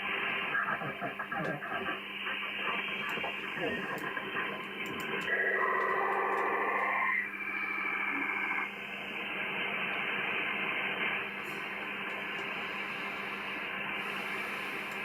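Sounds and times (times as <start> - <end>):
radio static hiss: 0.0 - 15.0.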